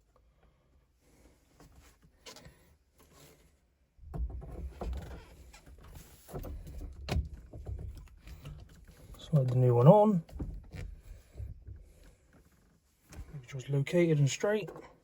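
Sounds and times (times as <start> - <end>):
steering wheel knocks and scraping: 4.0 - 13.4.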